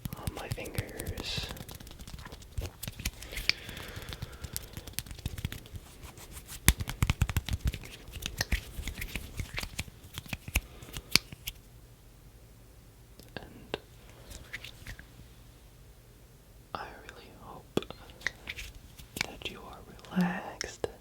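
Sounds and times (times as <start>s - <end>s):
hands rubbing near microphone: 0.0s - 11.6s, 14.2s - 15.1s, 18.2s - 19.6s.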